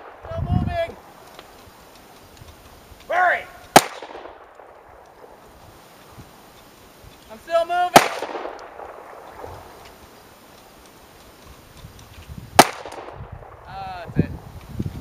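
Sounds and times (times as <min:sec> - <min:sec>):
person shouting: 0:03.1 - 0:03.6
gunshots: 0:03.7 - 0:05.4, 0:07.9 - 0:09.8, 0:12.6 - 0:13.7.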